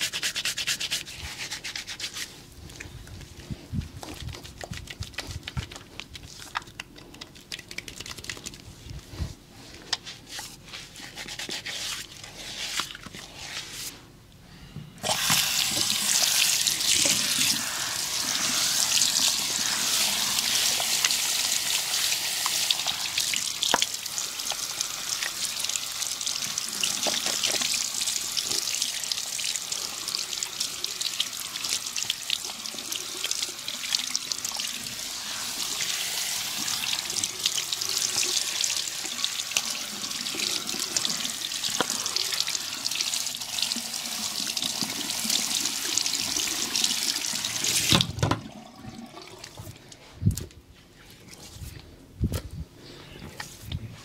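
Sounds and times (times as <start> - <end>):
soft rubbing and scrubbing: 0.0 - 14.2
tap water running: 15.0 - 49.6.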